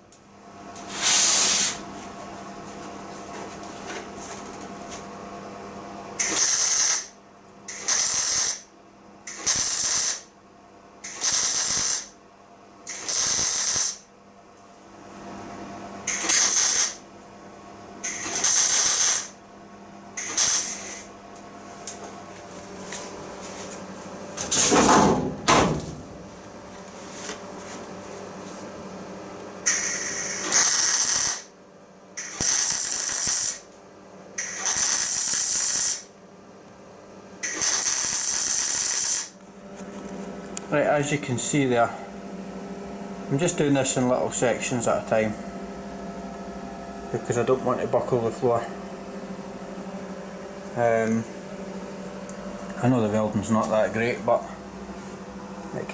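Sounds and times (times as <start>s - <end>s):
steady low hum: 0.0s - 55.9s
welder tack welding bursts: 0.9s - 1.8s, 6.2s - 8.7s, 9.3s - 10.3s, 11.0s - 12.2s, 12.9s - 14.1s, 16.1s - 17.0s, 18.0s - 19.4s, 20.2s - 21.1s, 29.7s - 31.5s, 32.2s - 33.7s, 34.4s - 36.1s, 37.4s - 39.4s.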